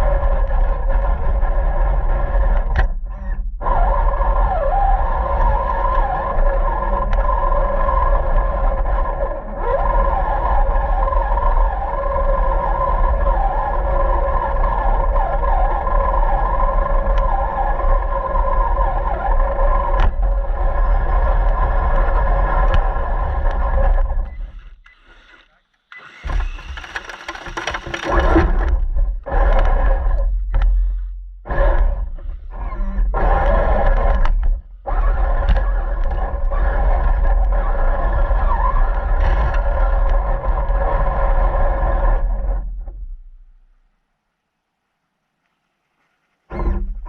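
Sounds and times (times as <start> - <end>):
drive and tyre rumble: 0.0 - 24.8, 27.6 - 43.3
rc car motor whine: 0.0 - 30.9.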